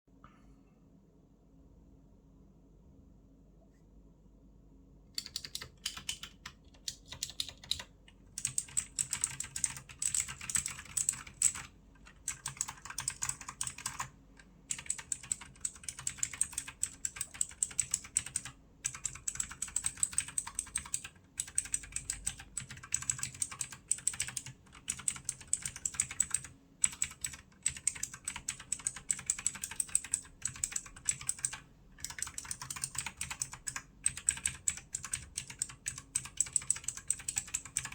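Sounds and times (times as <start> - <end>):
mechanical keyboard typing: 5.2 - 37.9.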